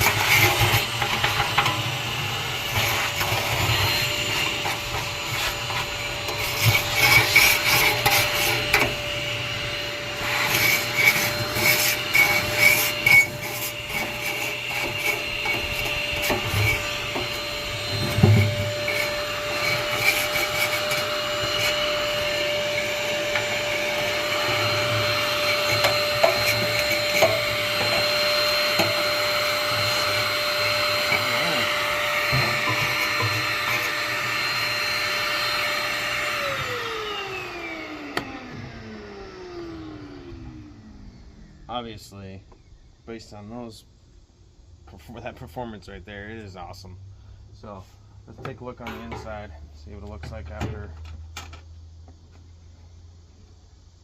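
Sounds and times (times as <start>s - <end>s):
vacuum motor whine: 0.0s - 43.0s.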